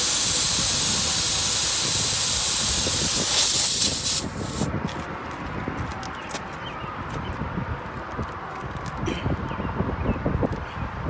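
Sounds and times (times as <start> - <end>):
gas hissing under pressure: 0.0 - 4.7.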